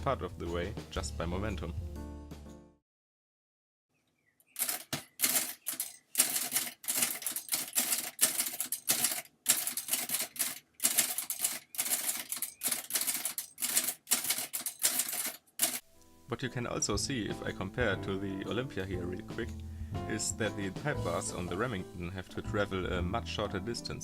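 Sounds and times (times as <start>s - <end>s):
typewriter keystrokes: 4.6s - 15.8s.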